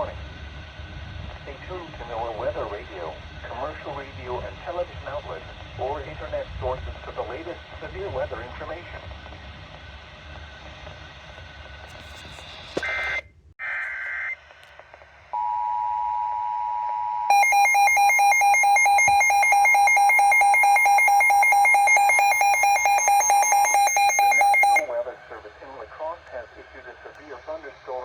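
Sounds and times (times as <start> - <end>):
steady single-pitch alert tone: 15.4 - 24.9
rapid electronic alarm beeping: 17.3 - 25.0
screeching digital data bursts: 17.4 - 24.9.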